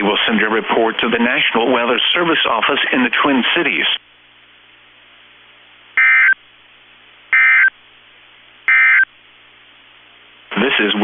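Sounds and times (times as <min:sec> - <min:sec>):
faint radio hiss: 0:00.0 - 0:11.0
buzzy digital tone bursts: 0:06.0 - 0:06.4.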